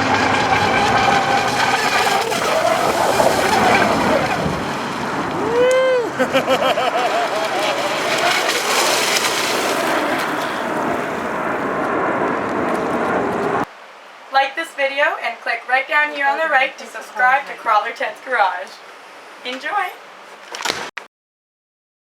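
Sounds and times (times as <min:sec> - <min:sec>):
electric boat motor whining: 0:00.0 - 0:11.5
water hissing: 0:00.0 - 0:11.6.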